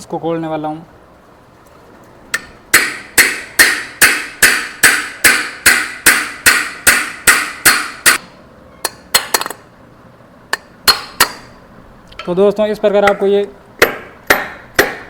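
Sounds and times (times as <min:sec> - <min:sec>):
hammer striking metal housing: 0:02.3 - 0:09.6, 0:10.5 - 0:11.6, 0:13.0 - 0:15.0.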